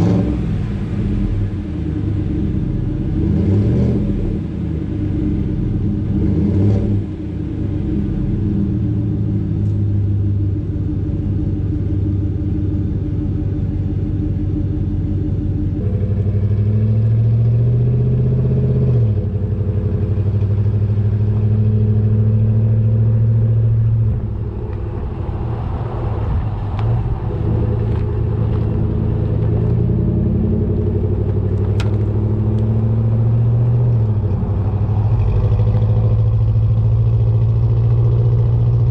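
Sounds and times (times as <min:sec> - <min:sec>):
vee eight engine running: 0:19.2 - 0:38.9.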